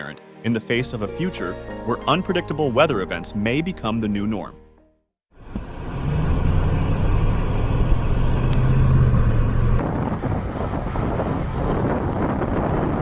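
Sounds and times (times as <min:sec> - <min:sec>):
vehicle engine hum: 0:05.4 - 0:13.0
steady rushing noise: 0:09.4 - 0:13.0.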